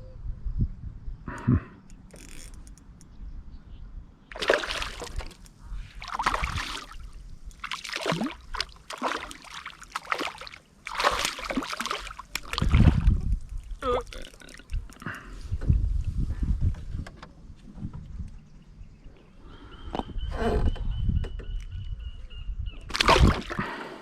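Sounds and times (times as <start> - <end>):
water splashing and sloshing: 4.3 - 15.0, 22.9 - 23.9.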